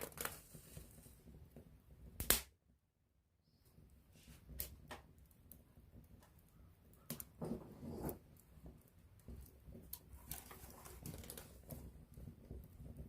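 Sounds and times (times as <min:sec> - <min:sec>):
campfire crackling: 0:00.0 - 0:02.5, 0:03.8 - 0:13.0
loud fire pop: 0:02.2 - 0:02.6.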